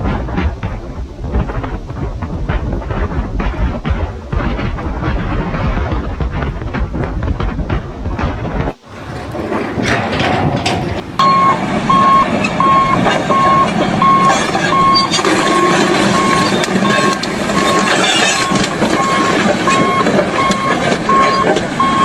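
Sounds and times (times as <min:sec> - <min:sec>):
engine and work noise: 0:06.4 - 0:22.0
reversing alarm beeping: 0:10.6 - 0:22.0.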